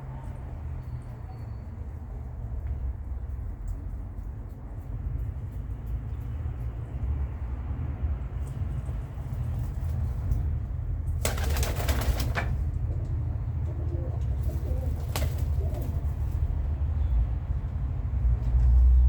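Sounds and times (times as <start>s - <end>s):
pigeon wings flapping: 11.1s - 12.7s, 13.9s - 16.4s.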